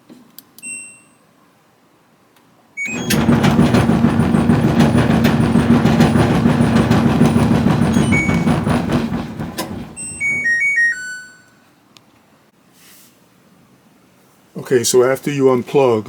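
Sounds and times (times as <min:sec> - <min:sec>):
dryer drum rumbling: 0:02.9 - 0:10.7.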